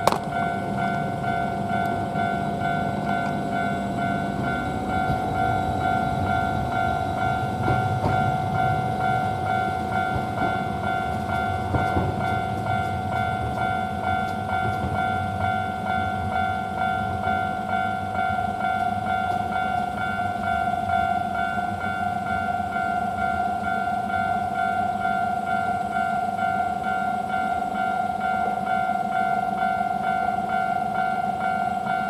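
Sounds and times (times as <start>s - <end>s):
wheels clicking over rail joints: 0.0s - 3.7s, 4.4s - 16.5s
level-crossing bell clanging: 0.0s - 32.0s
tram rumbling past: 0.0s - 32.0s.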